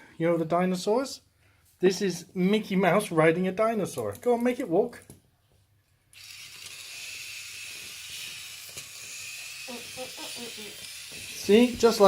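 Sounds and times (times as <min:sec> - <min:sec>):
toy motor and gears whirring: 0:06.1 - 0:12.0.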